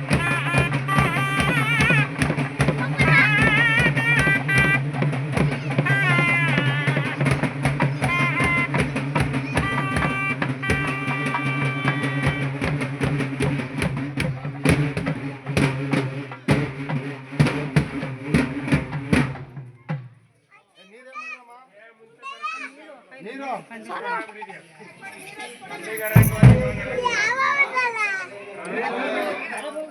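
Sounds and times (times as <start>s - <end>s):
busy drumming: 0.0s - 20.1s, 26.0s - 27.6s
wavering melody instrument: 26.0s - 27.3s.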